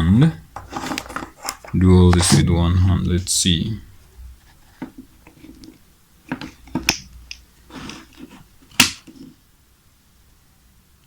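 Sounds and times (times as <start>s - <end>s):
soft rustle: 7.6s - 9.4s.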